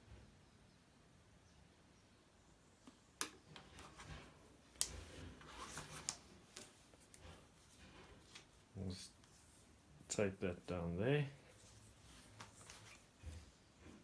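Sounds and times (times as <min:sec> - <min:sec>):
tape rustling: 0:02.8 - 0:10.7, 0:11.4 - 0:14.0.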